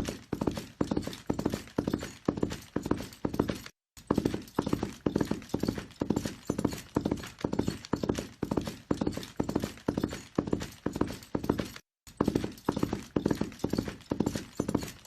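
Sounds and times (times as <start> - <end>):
horse hoofbeats galloping: 0.0 - 15.0.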